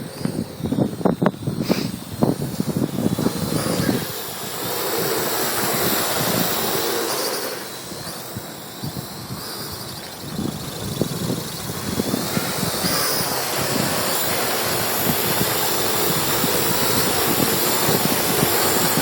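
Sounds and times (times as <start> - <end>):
drone propellers whining: 0.0 - 19.0
wind buffeting microphone: 0.0 - 19.0.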